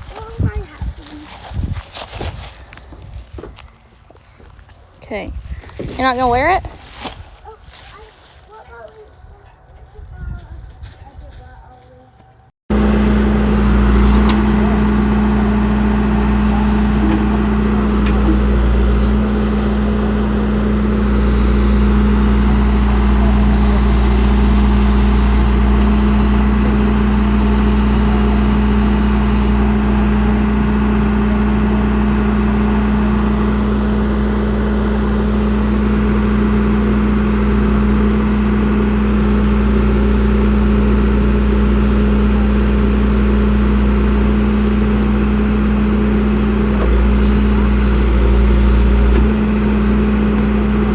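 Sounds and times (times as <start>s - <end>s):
vehicle engine droning: 11.6s - 50.9s.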